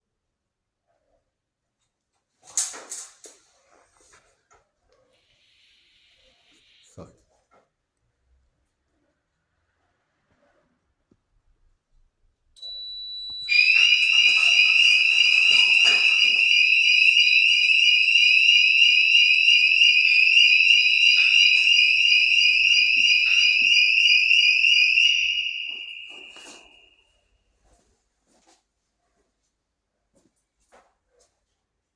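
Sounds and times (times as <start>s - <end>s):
quiet steady tone: 12.5s - 14.5s
shrill electronic alarm sweeps: 12.6s - 27.0s.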